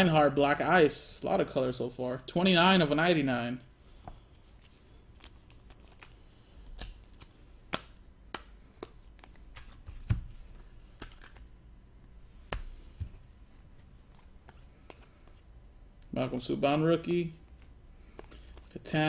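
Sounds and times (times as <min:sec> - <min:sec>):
trading cards being flipped: 0:04.3 - 0:16.6.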